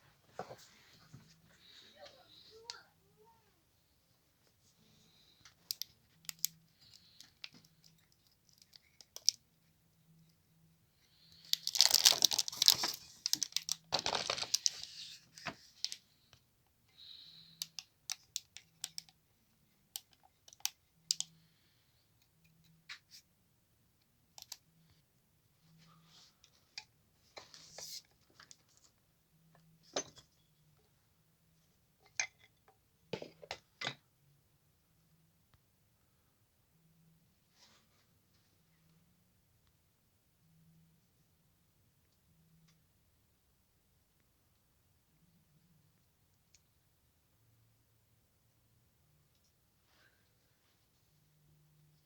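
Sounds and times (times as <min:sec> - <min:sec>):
rustling and scraping: 0:00.0 - 0:01.7
small hard objects clicking: 0:05.7 - 0:09.4, 0:11.4 - 0:14.8, 0:17.6 - 0:19.1.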